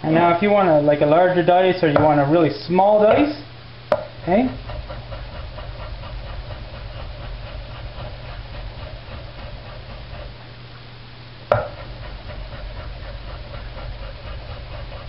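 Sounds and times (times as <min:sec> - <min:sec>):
steady low hum: 0:00.0 - 0:15.0
knife chopping on cutting board: 0:03.9 - 0:10.3, 0:11.5 - 0:15.0
sharp knock: 0:11.5 - 0:11.8.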